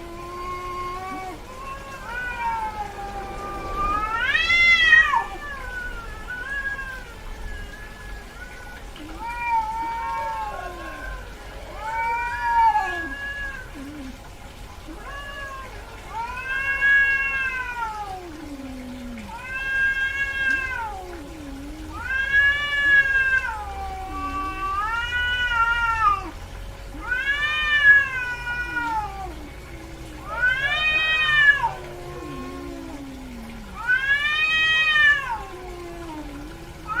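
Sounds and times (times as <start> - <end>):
cat yowling: 0.0 - 14.1, 14.9 - 37.0.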